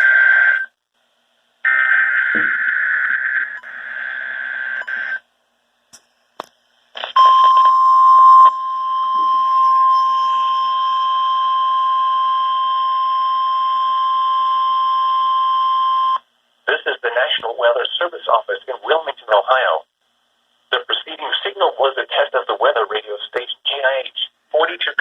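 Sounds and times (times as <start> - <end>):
steady warning alarm tone: 7.2 - 16.2
digital data screech: 9.8 - 10.9.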